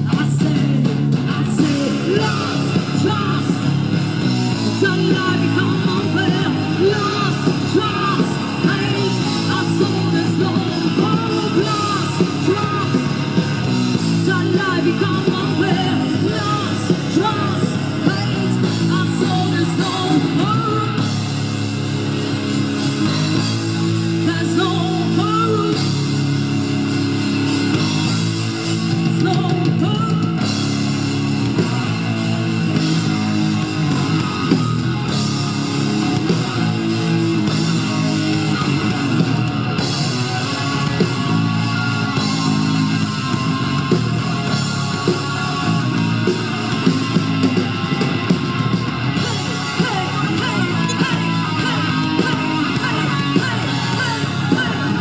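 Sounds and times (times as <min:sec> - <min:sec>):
person singing and shouting: 0:00.0 - 0:21.2, 0:24.1 - 0:26.1, 0:29.0 - 0:30.6, 0:49.2 - 0:55.0
live rock band playing: 0:00.0 - 0:55.0.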